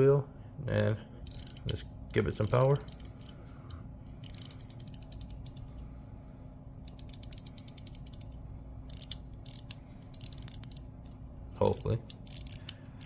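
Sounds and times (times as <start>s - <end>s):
pocket watch winding clicks: 1.3s - 3.3s, 4.2s - 5.8s, 6.8s - 12.8s.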